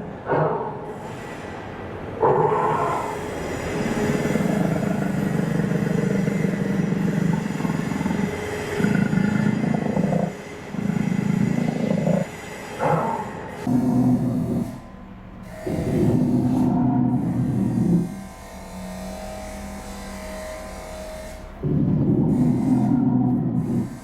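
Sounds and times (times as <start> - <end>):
dinosaur roar through speaker: 2.2 - 14.8, 15.6 - 18.1, 21.6 - 24.0.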